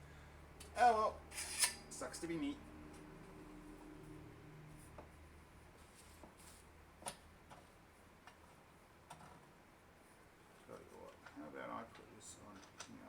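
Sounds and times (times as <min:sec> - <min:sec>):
faint clicks and knocks of parts: 0:05.8 - 0:09.5, 0:10.4 - 0:13.0.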